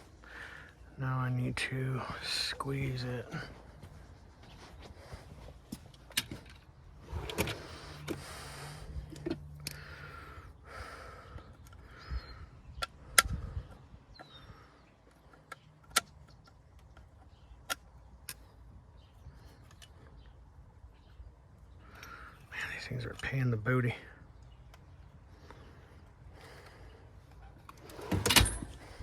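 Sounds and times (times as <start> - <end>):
plastic parts clicking and snapping: 15.0 - 18.5.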